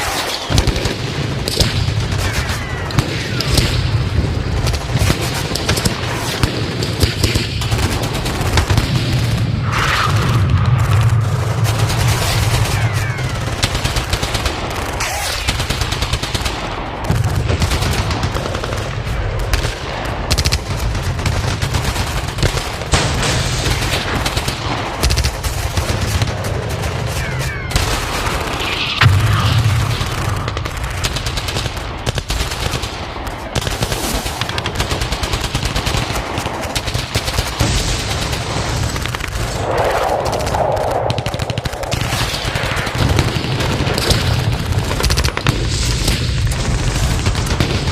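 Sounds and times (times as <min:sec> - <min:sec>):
rifle shots: 0:00.0 - 0:39.6, 0:41.1 - 0:47.9
heavy booms: 0:26.9 - 0:31.0.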